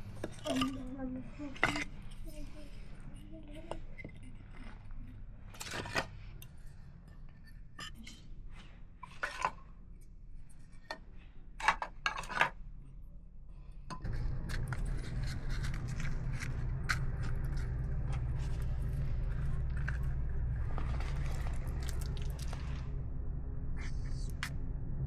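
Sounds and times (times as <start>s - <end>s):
low steady rumble: 13.3s - 25.0s.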